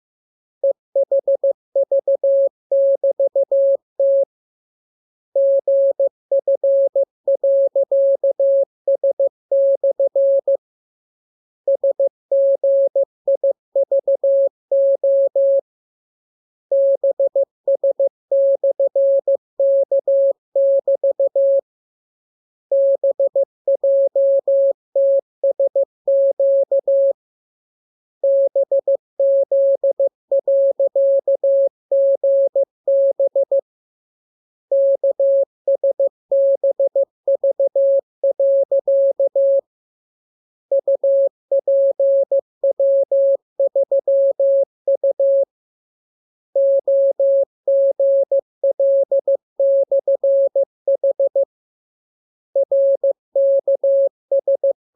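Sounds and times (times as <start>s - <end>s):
morse code beeps: 34.7s - 39.7s.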